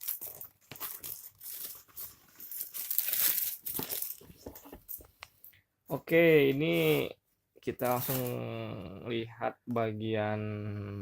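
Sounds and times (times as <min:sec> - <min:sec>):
packaging rustling and crackling: 0:00.0 - 0:05.1.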